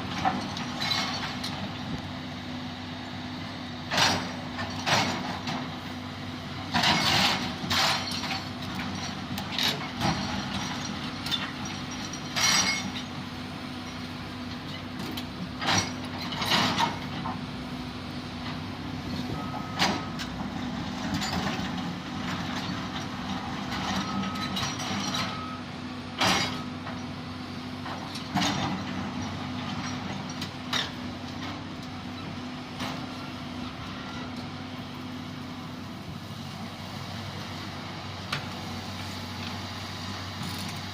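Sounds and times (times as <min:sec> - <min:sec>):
heavy machine engine running: 0:00.0 - 0:40.9
loud metal clanks and knocks: 0:03.9 - 0:05.7, 0:06.7 - 0:13.1.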